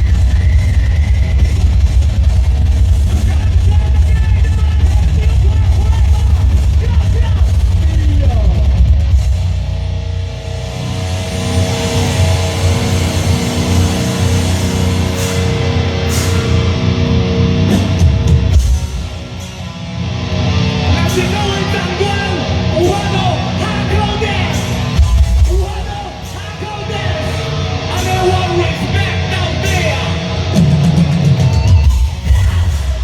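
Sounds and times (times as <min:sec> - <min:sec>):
live heavy metal band: 0:00.0 - 0:33.0.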